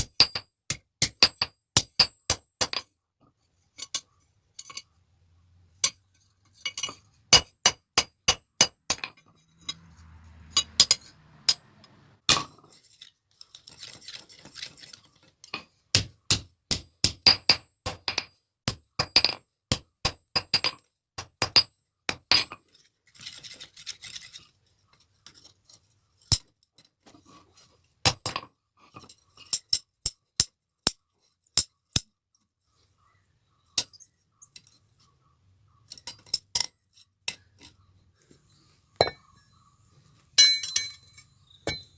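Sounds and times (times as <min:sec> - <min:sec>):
hammer striking metal: 0:39.0 - 0:39.2.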